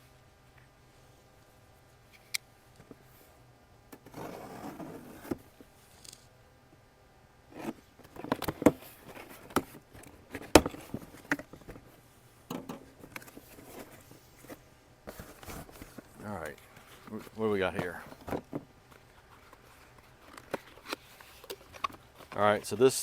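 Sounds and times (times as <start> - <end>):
rustling and scraping of box parts: 4.0 - 6.3, 7.5 - 23.0.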